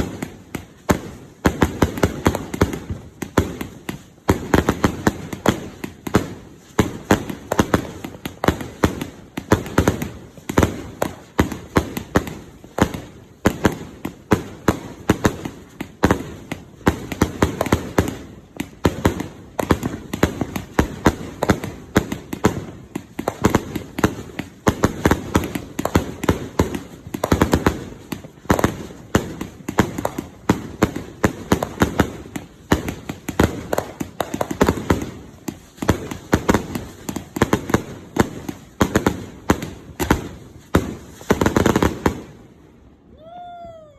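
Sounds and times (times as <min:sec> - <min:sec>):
firework cake bangs: 0:00.0 - 0:42.4.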